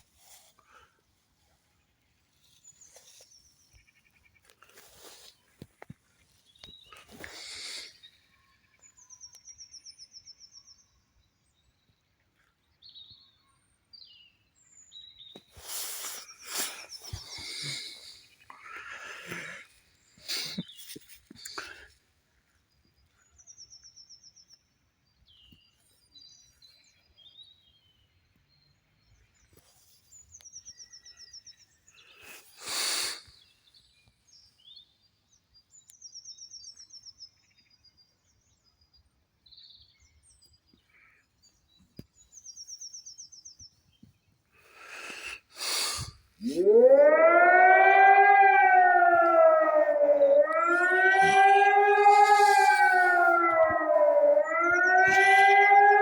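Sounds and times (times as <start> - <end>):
civil defence siren wailing: 46.4 - 56.0.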